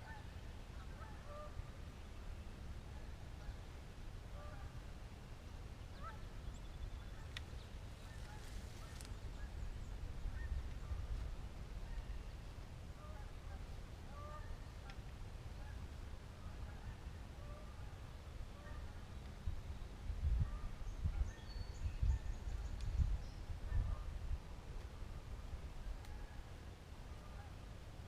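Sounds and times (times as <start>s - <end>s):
geese honking: 0.9s - 1.6s, 13.0s - 14.6s.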